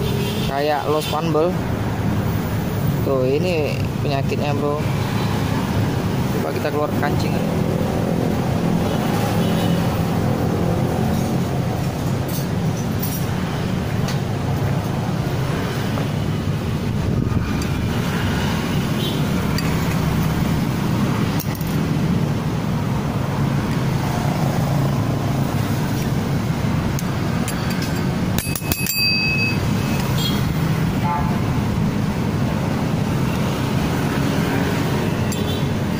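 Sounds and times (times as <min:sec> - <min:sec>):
sharp metallic clinks: 0:12.2 - 0:13.4, 0:19.5 - 0:20.3, 0:21.3 - 0:21.9, 0:27.0 - 0:30.5, 0:35.2 - 0:35.6.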